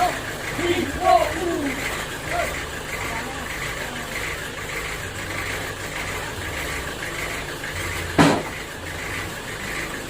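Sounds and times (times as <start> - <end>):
engine idling: 0.0 - 10.0
sharp knock: 8.2 - 8.5.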